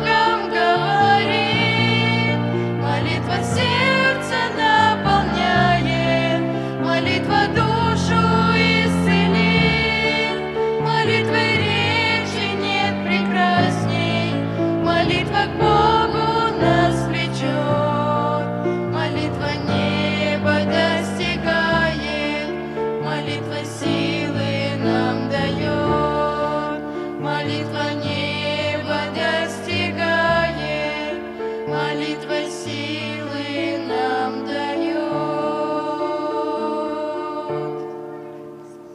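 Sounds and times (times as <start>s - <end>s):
hymn singing: 0.0s - 38.9s
sustained instrumental accompaniment: 0.0s - 38.9s.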